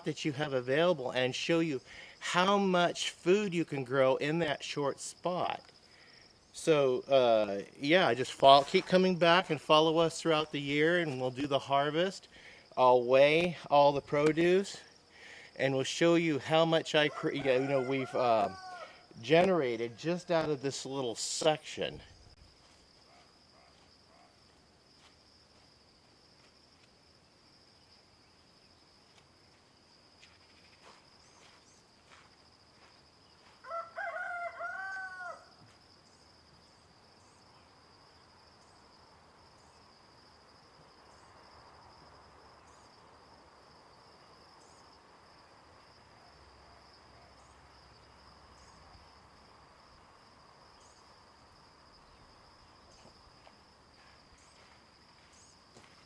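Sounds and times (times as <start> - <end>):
insects droning: 0.0 - 56.0
rooster crowing: 17.1 - 19.0, 33.6 - 35.6.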